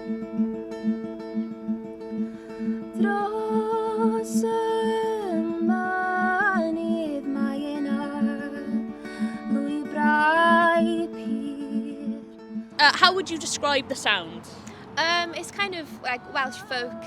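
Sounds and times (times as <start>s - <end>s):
guitar picking: 0.0s - 14.0s
woman singing folk melody: 2.7s - 13.1s, 15.5s - 17.0s.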